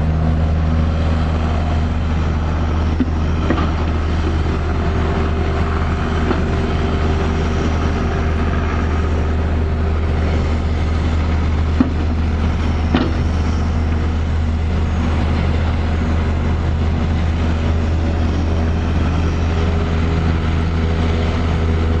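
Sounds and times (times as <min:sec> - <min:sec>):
diesel engine running under load: 0:00.0 - 0:22.0
short knocks: 0:12.9 - 0:13.3.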